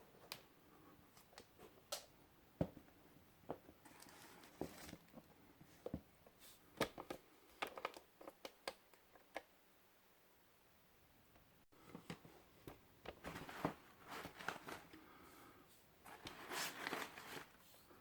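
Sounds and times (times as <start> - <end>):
packaging rustle: 16.1 - 17.6.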